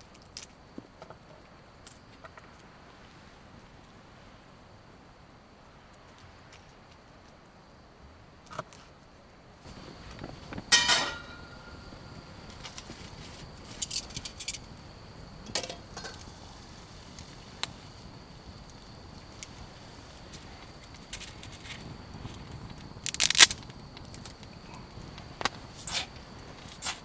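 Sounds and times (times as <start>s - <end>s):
loud ringing metal clank: 10.7s - 11.9s
metal cookware clinking: 10.7s - 11.9s, 15.4s - 16.3s.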